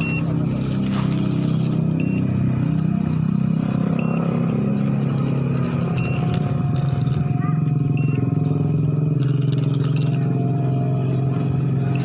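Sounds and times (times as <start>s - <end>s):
low motor drone: 0.0s - 12.0s
short high beep: 8.0s - 8.2s.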